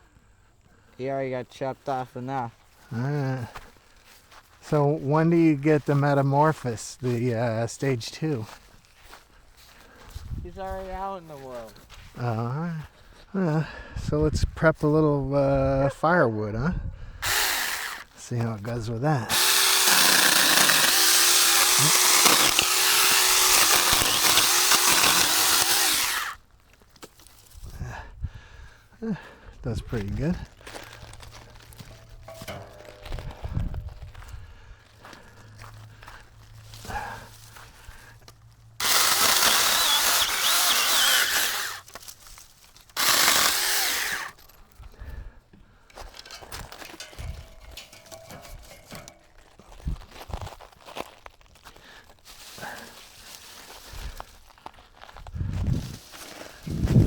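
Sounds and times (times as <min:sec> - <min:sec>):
electric chainsaw cutting wood: 0:17.2 - 0:18.2, 0:19.3 - 0:26.4, 0:31.8 - 0:33.3, 0:38.8 - 0:42.0, 0:42.9 - 0:44.4, 0:47.8 - 0:49.1.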